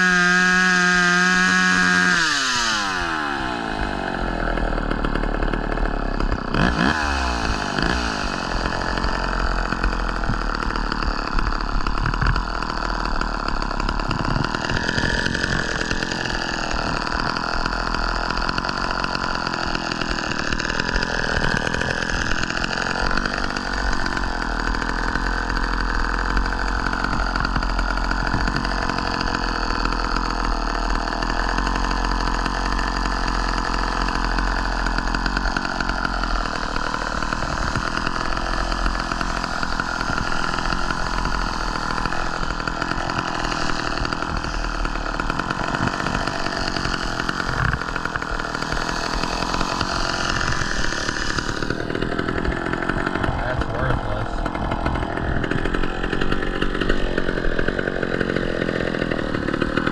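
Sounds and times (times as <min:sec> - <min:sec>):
chainsaw running: 0:00.0 - 0:59.9.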